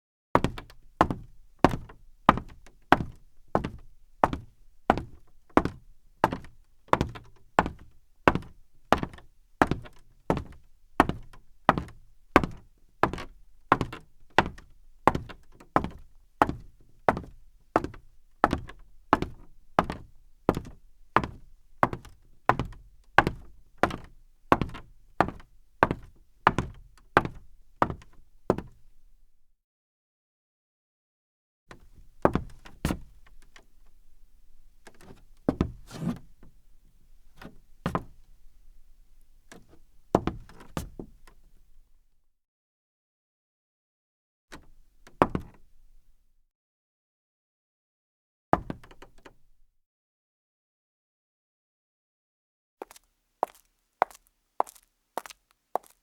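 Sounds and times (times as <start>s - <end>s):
floor creaking: 52.8s - 56.0s
high heels walking: 52.8s - 56.0s.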